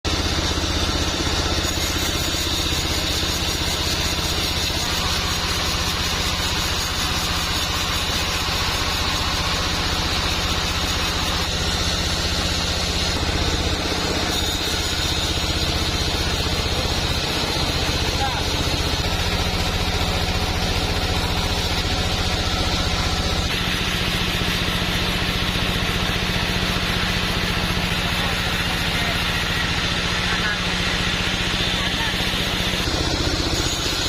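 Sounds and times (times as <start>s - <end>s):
engine running steadily: 0.1s - 34.0s.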